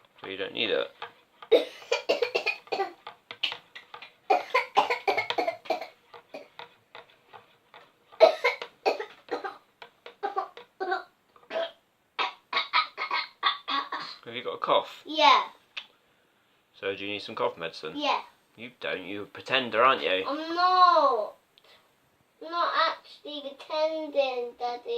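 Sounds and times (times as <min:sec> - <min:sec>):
girl coughing: 0:01.5 - 0:03.0, 0:04.3 - 0:06.5, 0:08.2 - 0:09.6, 0:10.2 - 0:14.2.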